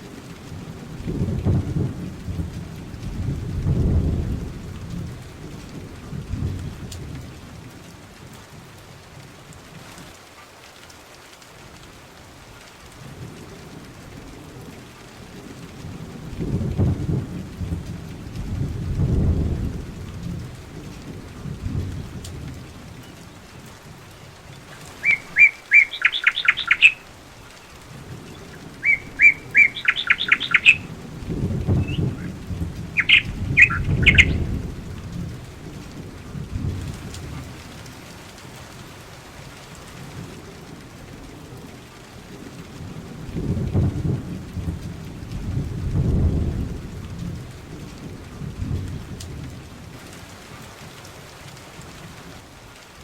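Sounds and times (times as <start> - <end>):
steady rain: 0.0 - 53.0
thunder rolling: 1.0 - 7.2, 15.8 - 37.8, 43.0 - 49.6
small bird chirping: 24.7 - 27.7, 28.3 - 30.9, 31.7 - 34.5.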